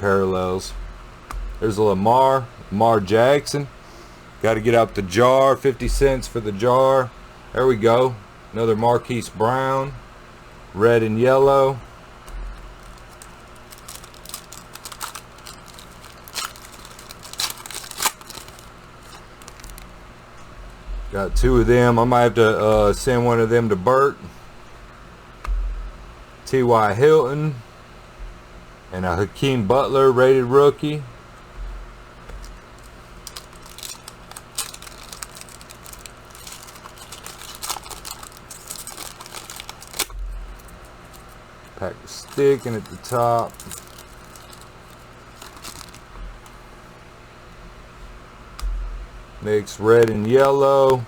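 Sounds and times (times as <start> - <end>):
trading cards being handled: 12.2 - 20.0, 32.3 - 46.6
crinkly pack wrapping: 12.3 - 20.0, 32.4 - 46.6.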